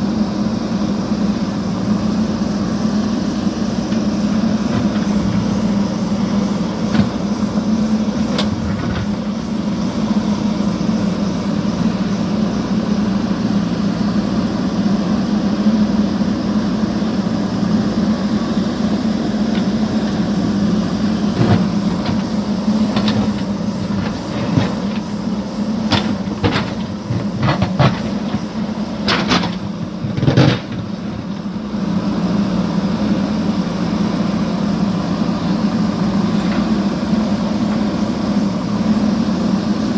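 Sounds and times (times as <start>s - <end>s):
diesel engine running: 0.0s - 39.9s
sharp knocks and clanks: 6.9s - 7.3s, 21.3s - 25.2s, 25.9s - 31.4s.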